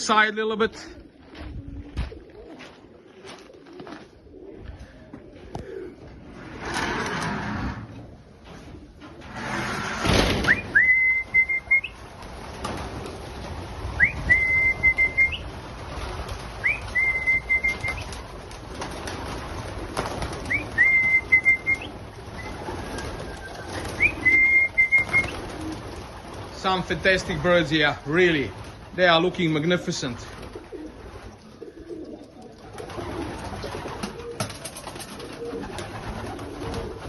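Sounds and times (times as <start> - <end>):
whistled call: 10.4 - 12.0, 14.0 - 15.4, 16.6 - 18.1, 20.5 - 25.4.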